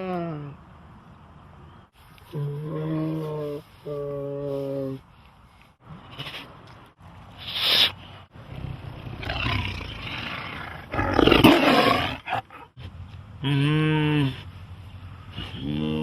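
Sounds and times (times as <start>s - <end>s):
tiger roaring and snarling: 8.4s - 12.8s.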